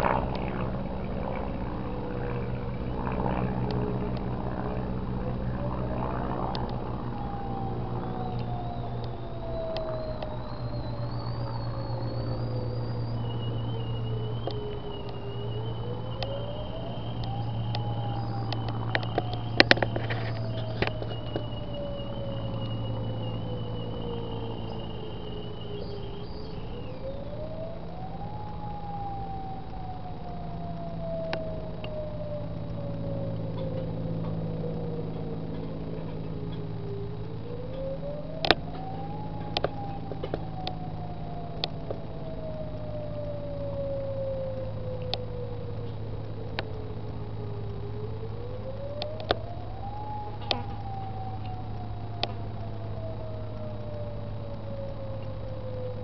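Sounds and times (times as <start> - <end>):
distant warning sirens winding: 0.0 - 56.0
low hum: 0.0 - 56.0
thin steady high tone: 0.0 - 56.0
sharp clicks: 16.1 - 23.4, 39.4 - 40.8, 48.9 - 49.5.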